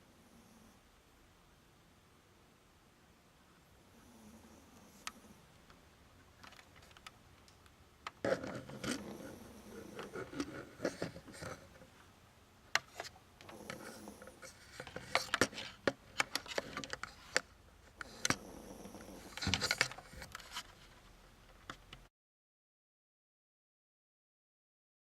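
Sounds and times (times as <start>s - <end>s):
dog snoring: 3.9s - 5.5s, 8.2s - 11.6s, 13.4s - 15.2s, 18.0s - 19.7s
scraping and clicking noises: 6.4s - 12.1s, 12.7s - 22.1s.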